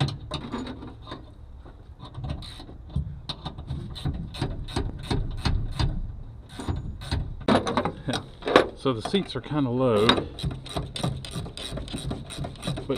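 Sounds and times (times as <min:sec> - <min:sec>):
ratchet wrench clicking: 0:10.0 - 0:12.9.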